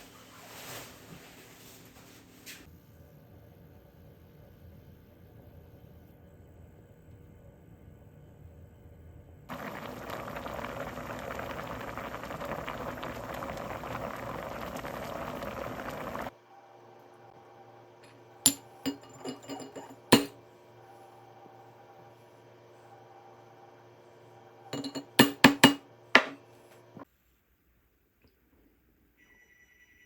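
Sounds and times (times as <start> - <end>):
glass clinks: 18.5 - 20.3, 24.8 - 25.7.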